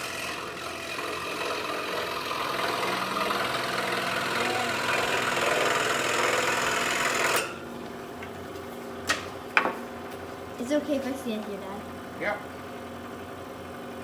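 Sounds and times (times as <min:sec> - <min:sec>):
scroll saw cutting wood: 0:00.0 - 0:07.6.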